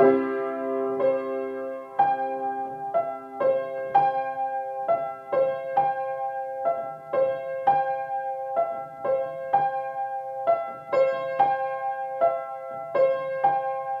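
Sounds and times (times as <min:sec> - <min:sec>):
slow gentle piano music: 0:00.0 - 0:14.0.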